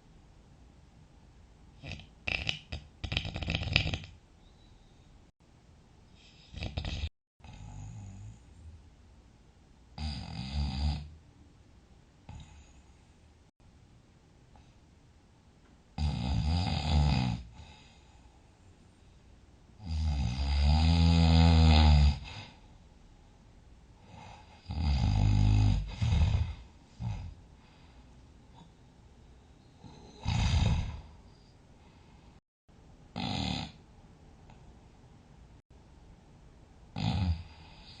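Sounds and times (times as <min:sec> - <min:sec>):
person snoring loudly: 0:01.8 - 0:04.1, 0:06.4 - 0:08.4, 0:10.0 - 0:11.1, 0:16.0 - 0:17.6, 0:19.8 - 0:22.5, 0:24.6 - 0:27.3, 0:29.8 - 0:31.2, 0:33.2 - 0:33.8, 0:37.0 - 0:38.0.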